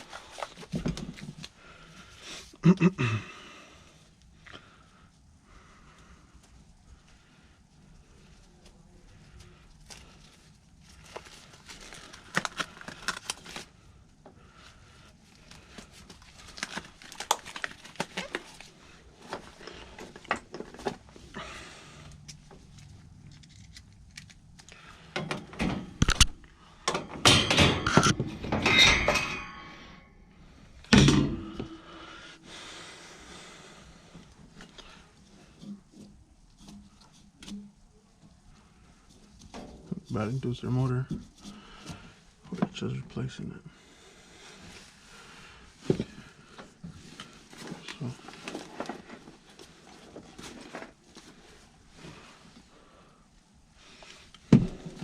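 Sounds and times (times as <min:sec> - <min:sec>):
metallic clattering of tools: 0:26.9 - 0:30.1, 0:30.9 - 0:31.8.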